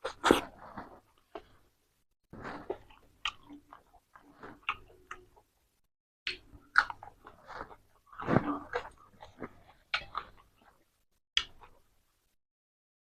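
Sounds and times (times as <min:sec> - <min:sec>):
crunchy chewing: 0:00.0 - 0:01.6, 0:02.4 - 0:05.5, 0:06.4 - 0:11.9.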